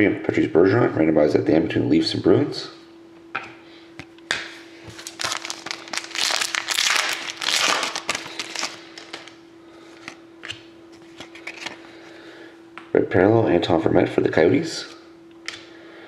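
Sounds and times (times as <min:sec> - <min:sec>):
faint steady hum: 0:00.0 - 0:16.0
foil wrapper crinkling: 0:04.9 - 0:09.4.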